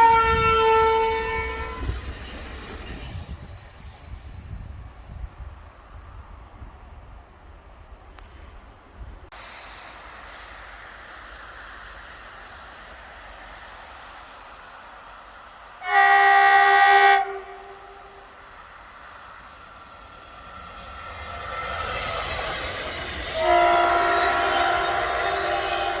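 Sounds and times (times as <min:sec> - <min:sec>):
train air horn blast: 0:00.0 - 0:02.0, 0:15.8 - 0:18.3, 0:23.2 - 0:26.0
train hissing: 0:00.0 - 0:05.4, 0:09.2 - 0:26.0.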